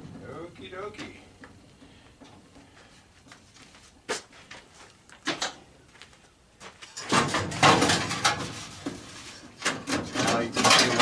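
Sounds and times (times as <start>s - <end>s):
sheet metal scraping and rattling: 6.9s - 11.0s.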